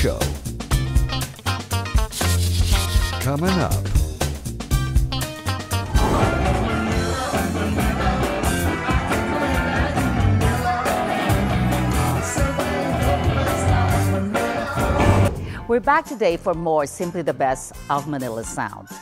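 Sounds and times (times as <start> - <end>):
pop-rock song with singer: 6.0 - 15.4.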